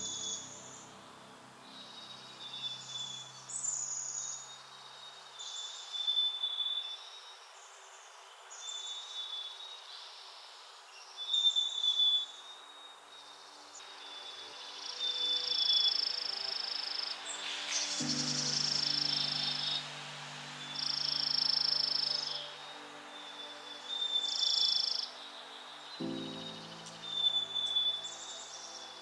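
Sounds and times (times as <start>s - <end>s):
soft background music: 0.0s - 6.1s, 12.7s - 29.0s
songbird singing: 0.0s - 29.0s.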